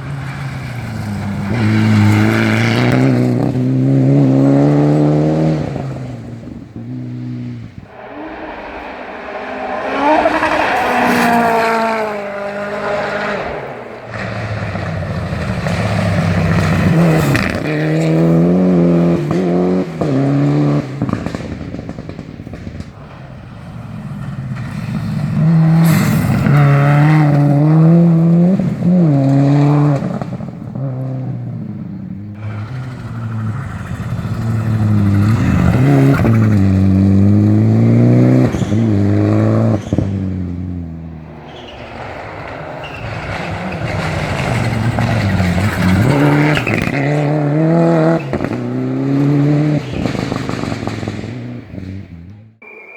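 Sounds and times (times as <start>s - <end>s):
turbocharged engine revving: 0.0s - 22.6s, 24.5s - 52.6s.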